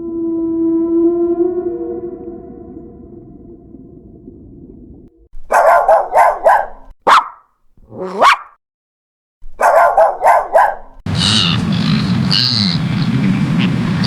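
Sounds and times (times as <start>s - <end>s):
dog yelping: 5.4s - 8.6s, 9.5s - 13.0s
dog barking: 5.5s - 8.6s, 9.6s - 13.8s
dog whining: 7.2s - 8.5s
steady loud noise: 11.1s - 14.0s.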